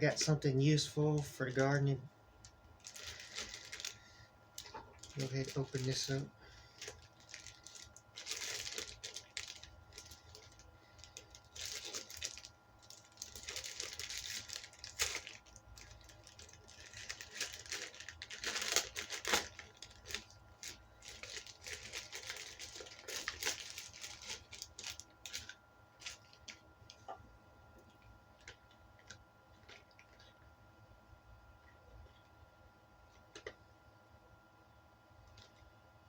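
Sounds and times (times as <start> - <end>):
package tearing and crinkling: 2.8 - 4.0, 4.6 - 6.2, 6.8 - 26.6.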